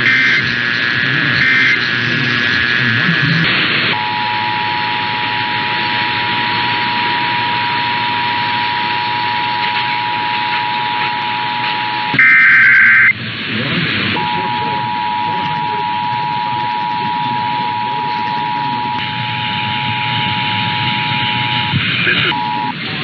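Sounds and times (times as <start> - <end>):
two-tone attention signal: 0.0 - 2.0, 12.1 - 13.2, 14.2 - 22.8
harsh high digital warble: 0.0 - 23.0
radio hiss: 0.0 - 23.0.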